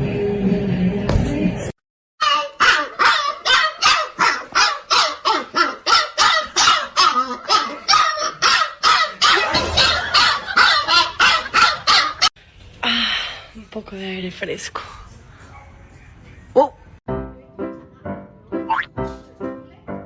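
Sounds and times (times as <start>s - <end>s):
dog barking rapidly: 2.3s - 12.3s.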